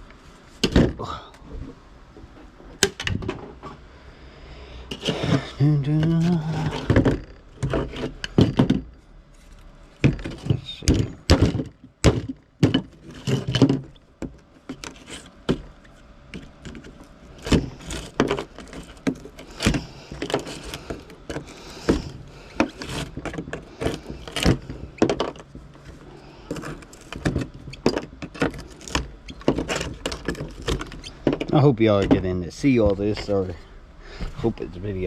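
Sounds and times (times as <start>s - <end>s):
scrap metal clanking: 4.9s - 9.0s.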